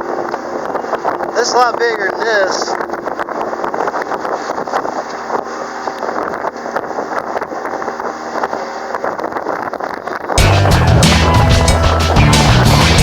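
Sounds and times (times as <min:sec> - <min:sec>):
wind buffeting microphone: 0:00.0 - 0:13.0
loud music: 0:10.4 - 0:13.0.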